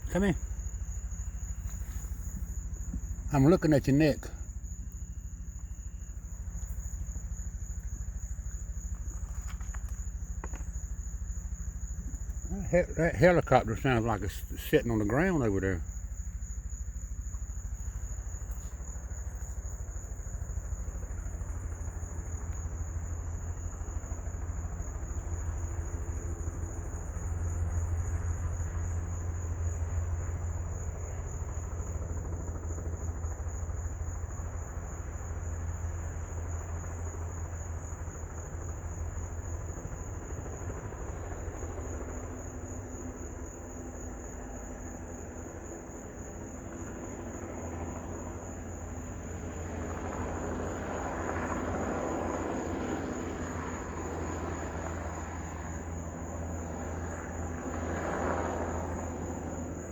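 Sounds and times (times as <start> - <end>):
helicopter rumble: 0.0 - 59.9
high insect trill: 0.0 - 59.9.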